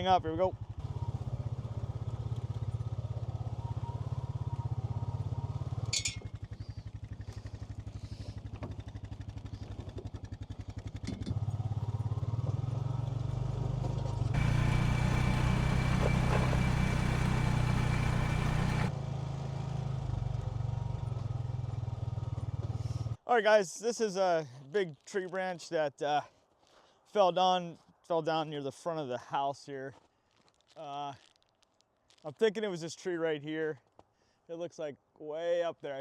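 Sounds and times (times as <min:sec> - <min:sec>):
vehicle engine running: 0:00.6 - 0:20.7.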